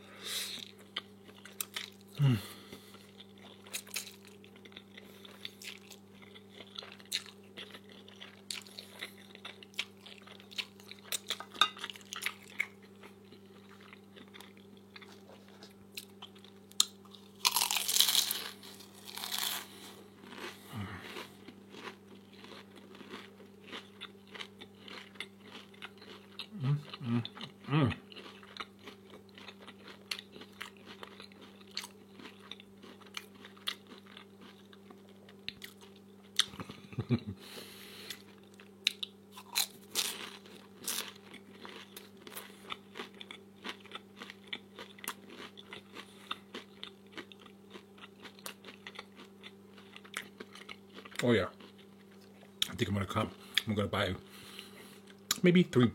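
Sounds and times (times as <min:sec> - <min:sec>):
steady low hum: 0:00.0 - 0:55.9
crunching and chewing food: 0:00.5 - 0:55.9.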